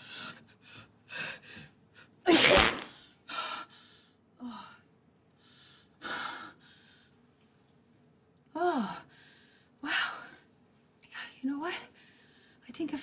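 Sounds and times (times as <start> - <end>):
person sneezing: 2.3 - 3.0.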